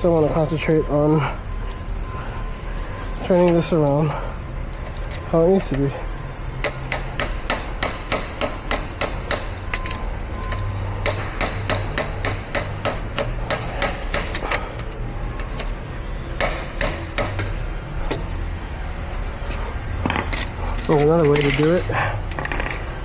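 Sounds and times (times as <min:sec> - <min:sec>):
hammer tapping metal: 0:06.6 - 0:09.8, 0:10.5 - 0:14.6, 0:16.4 - 0:17.6.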